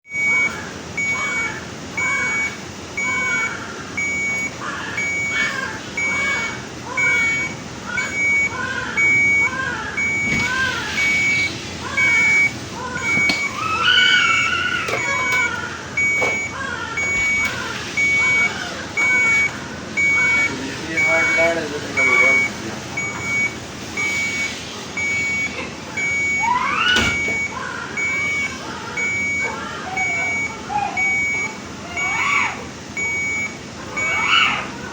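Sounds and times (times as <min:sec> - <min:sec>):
patient monitor beeping: 0:00.1 - 0:34.9.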